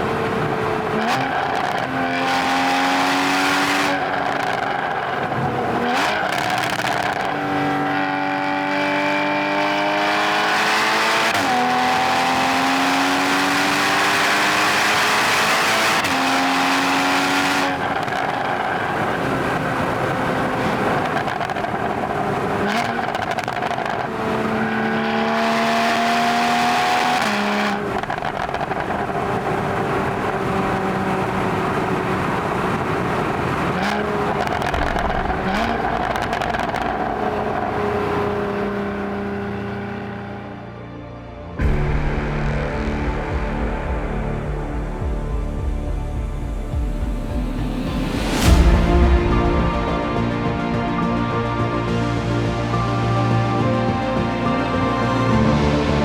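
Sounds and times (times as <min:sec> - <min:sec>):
car engine accelerating hard: 0:00.0 - 0:40.7.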